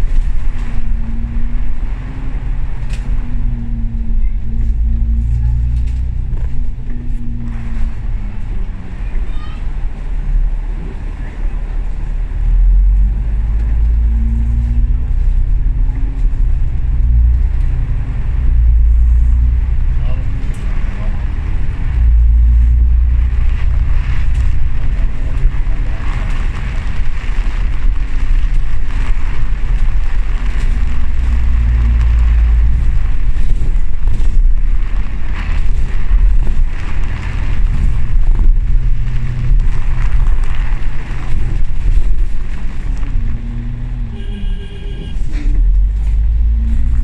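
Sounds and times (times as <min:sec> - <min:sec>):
bus diesel engine: 0:00.0 - 0:47.0
road noise: 0:00.0 - 0:47.0
brief high tone: 0:44.1 - 0:45.2.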